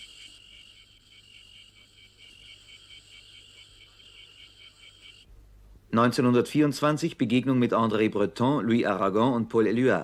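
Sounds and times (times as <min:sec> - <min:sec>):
crickets chirping: 0:00.0 - 0:05.3.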